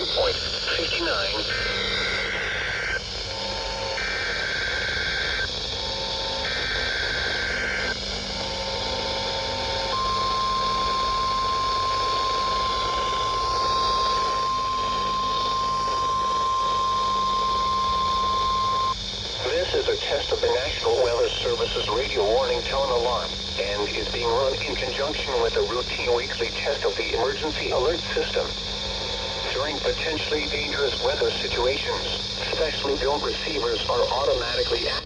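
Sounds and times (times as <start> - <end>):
receiver hum and hiss: 0.0 - 35.0
steady warning alarm tone: 0.0 - 35.0
warbling data tones: 0.0 - 35.0
faint lower beeps: 9.9 - 19.0.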